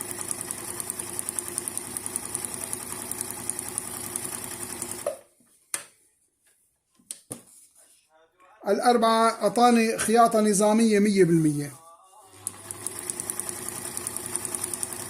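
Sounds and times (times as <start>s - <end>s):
sewing machine stitching: 0.0s - 5.1s, 12.3s - 15.0s.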